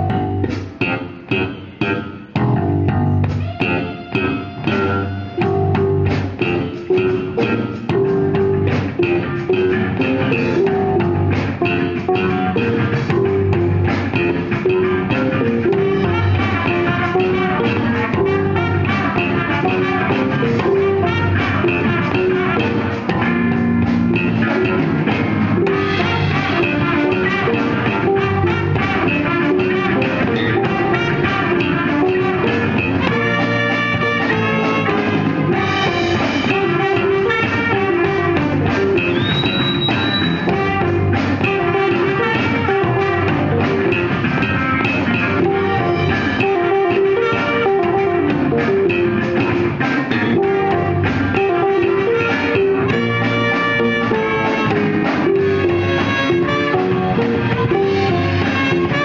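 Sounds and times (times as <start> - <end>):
live funk-jazz band playing: 0.0 - 59.0.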